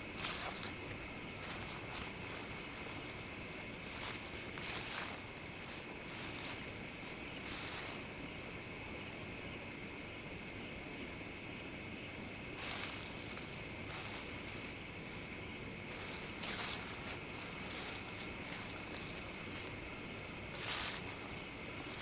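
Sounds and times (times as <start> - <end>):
footsteps crunching dry leaves: 0.0 - 8.3, 12.6 - 15.0, 15.8 - 22.0
night insects chirring: 0.0 - 22.0.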